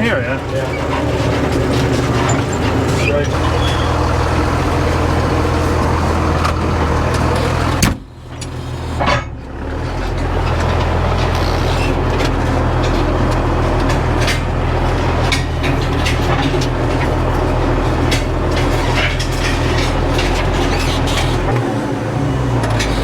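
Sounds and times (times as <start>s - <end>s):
vehicle engine humming: 0.0s - 23.0s.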